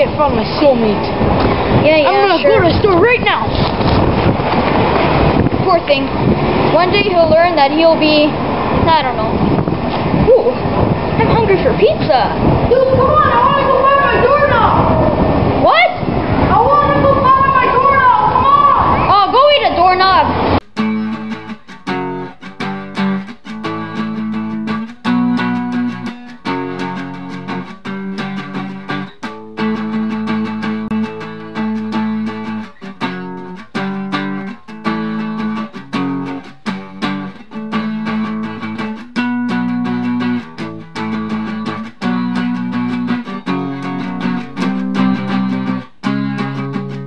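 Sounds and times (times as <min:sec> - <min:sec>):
guitar chords strummed: 0:00.0 - 0:10.1, 0:20.0 - 0:47.0.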